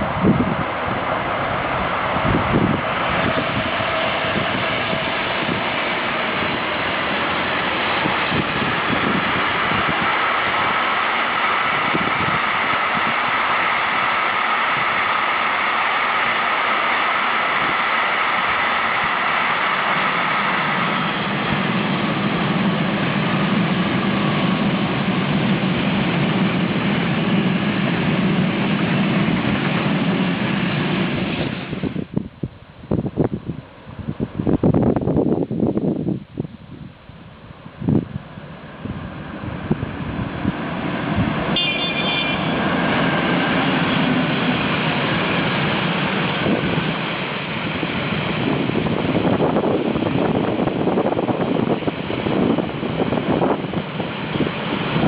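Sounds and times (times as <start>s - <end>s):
train rolling on rails: 0.0s - 55.0s.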